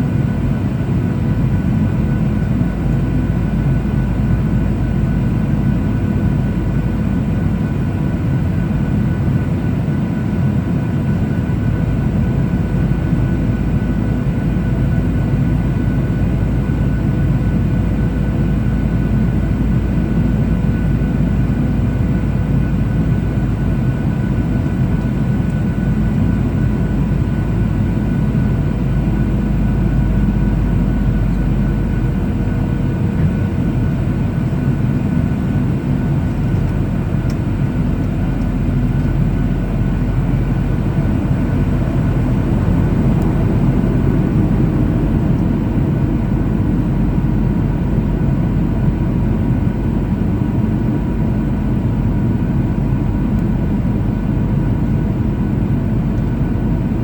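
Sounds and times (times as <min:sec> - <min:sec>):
jet engines droning: 0:00.0 - 0:57.0
deep rumble: 0:24.3 - 0:50.6.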